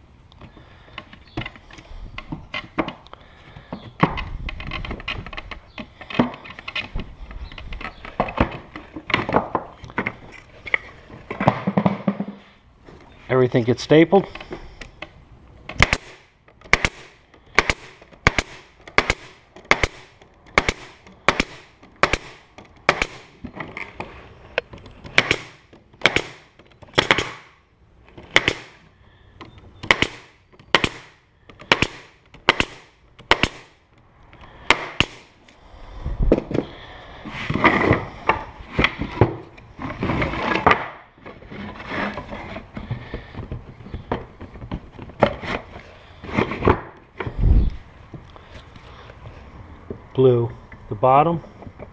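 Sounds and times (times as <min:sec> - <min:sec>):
knocking and handling wood: 0:00.4 - 0:13.0, 0:36.3 - 0:47.4.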